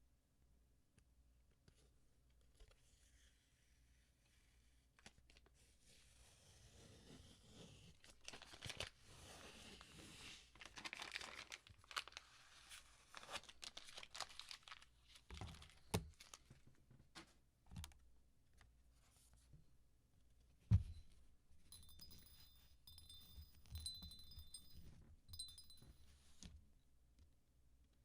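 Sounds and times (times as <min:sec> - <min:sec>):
packaging tearing and crinkling: 0:10.6 - 0:12.2, 0:13.1 - 0:14.9.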